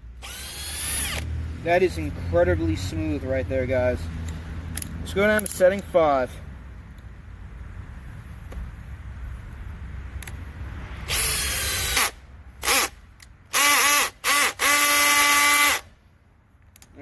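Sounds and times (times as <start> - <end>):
hammer drill driving screw: 0.2 - 1.3, 11.1 - 15.8.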